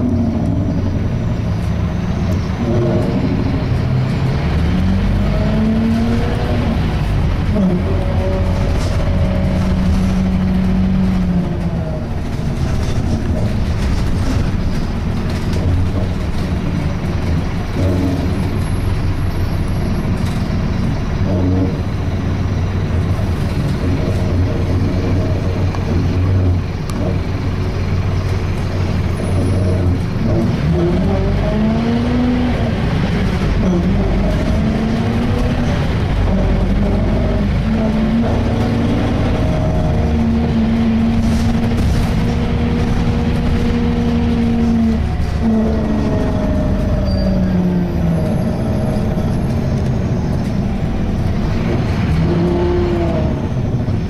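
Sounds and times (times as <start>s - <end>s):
diesel bus engine in motion: 0.0s - 54.0s
loud groaning tone: 29.2s - 54.0s.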